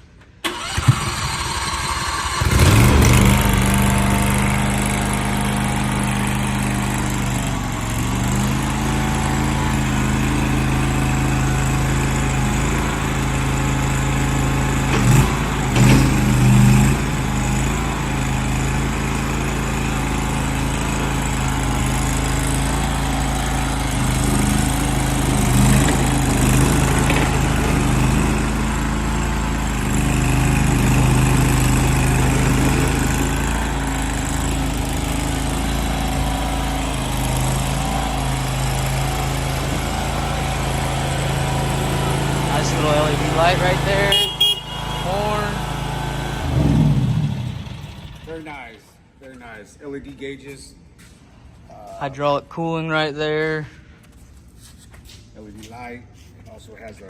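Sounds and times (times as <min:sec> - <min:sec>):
engine starter cranking: 0:00.2 - 0:04.8
engine running: 0:00.2 - 0:49.1.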